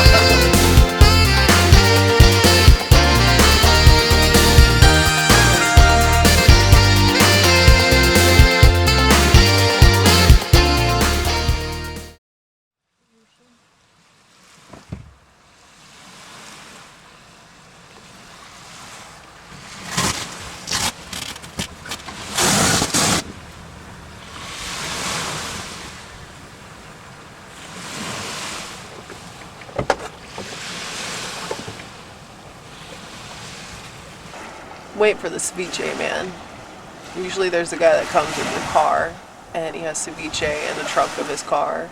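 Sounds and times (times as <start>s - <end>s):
surf washing in: 0.0s - 10.7s, 22.1s - 29.6s, 30.2s - 41.9s.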